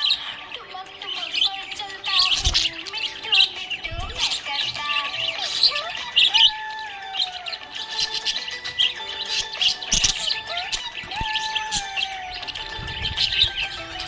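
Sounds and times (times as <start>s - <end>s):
budgerigars chirping and warbling: 0.0s - 14.0s.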